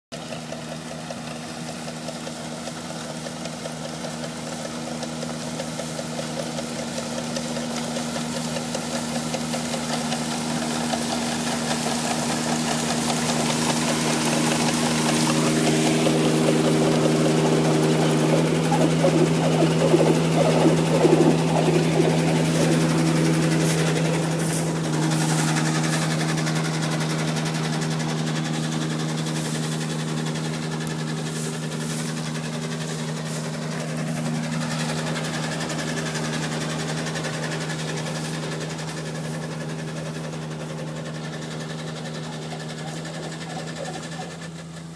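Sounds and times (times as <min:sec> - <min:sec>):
combine harvester engine running: 0:00.1 - 0:44.9
rough engine clatter: 0:00.1 - 0:44.9.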